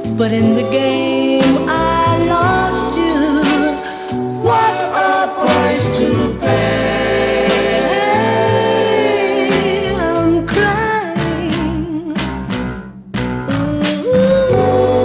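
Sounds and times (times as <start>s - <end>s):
oldies soul record with singing: 0.0s - 15.0s.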